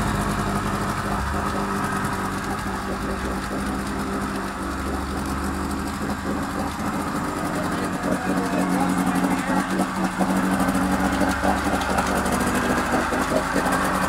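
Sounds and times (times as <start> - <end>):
outboard motor idling: 0.0 - 14.0.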